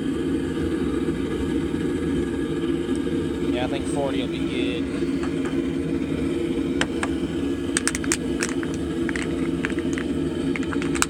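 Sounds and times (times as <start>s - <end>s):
forge burner roaring: 0.0s - 11.0s
sharp clicks and crackles: 6.8s - 11.0s.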